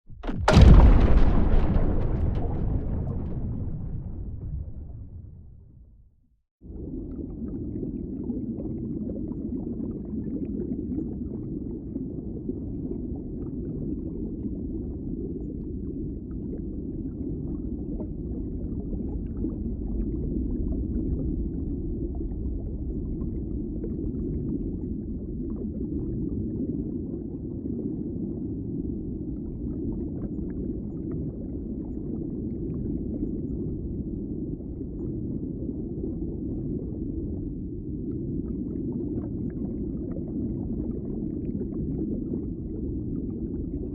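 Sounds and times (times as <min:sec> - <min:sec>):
muffled underwater rumble: 0:00.1 - 0:43.9.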